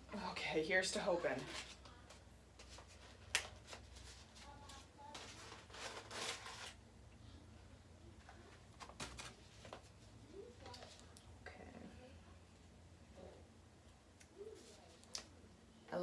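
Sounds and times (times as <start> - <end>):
packaging rustling and crinkling: 2.6 - 6.8.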